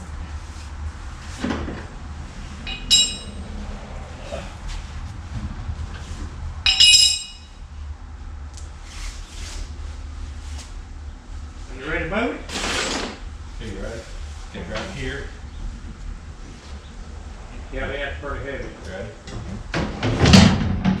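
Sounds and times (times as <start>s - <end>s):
steady low hum: 0.0s - 21.0s
sharp metallic clinks: 2.7s - 3.4s, 6.7s - 7.6s.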